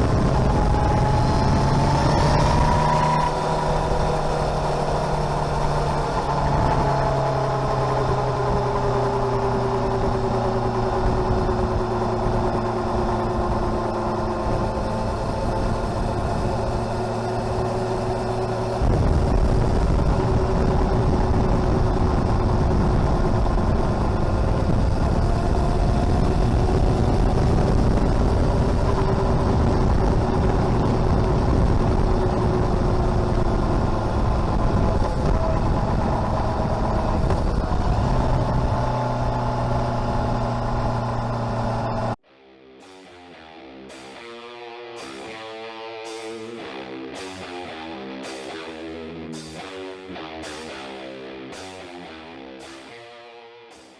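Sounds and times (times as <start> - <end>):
vehicle engine humming: 0.0 - 42.2.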